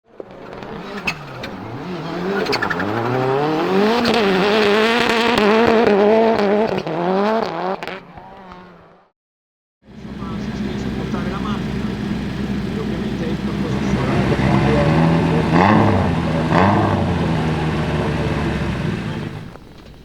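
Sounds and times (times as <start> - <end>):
rally car engine revving: 0.1 - 9.1, 9.9 - 19.7
sharp exhaust cracks: 9.9 - 20.0.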